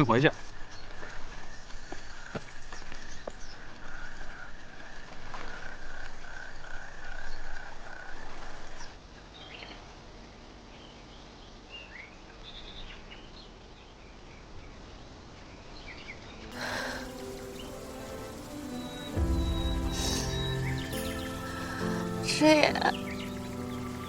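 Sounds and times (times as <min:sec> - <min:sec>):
bird chirps: 0:16.6 - 0:24.0.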